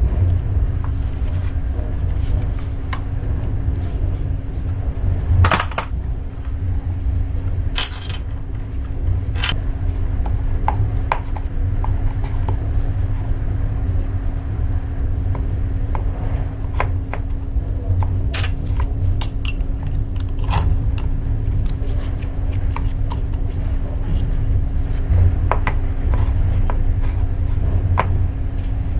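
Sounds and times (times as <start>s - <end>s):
steady low hum: 0.0s - 28.9s.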